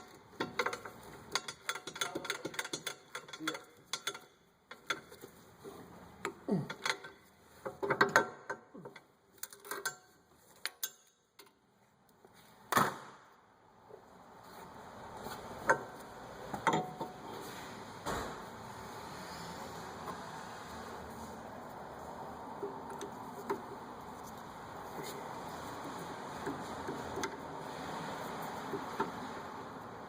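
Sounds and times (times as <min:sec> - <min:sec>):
metal tools clicking and clanking: 0:00.0 - 0:05.3, 0:06.5 - 0:11.5.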